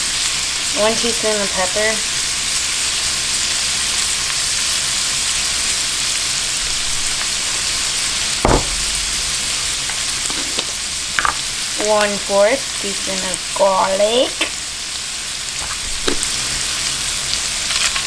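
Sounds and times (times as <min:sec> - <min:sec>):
sausage sizzling in a pan: 0:00.0 - 0:18.0
sharp knock: 0:08.4 - 0:09.9.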